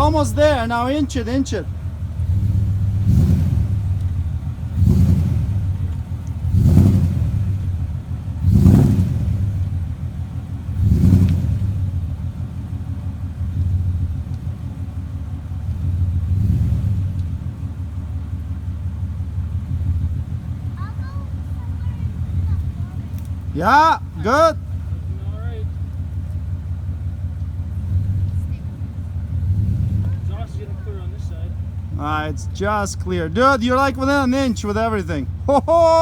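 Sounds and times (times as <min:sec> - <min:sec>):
pickup truck engine rumbling: 0:00.0 - 0:36.0.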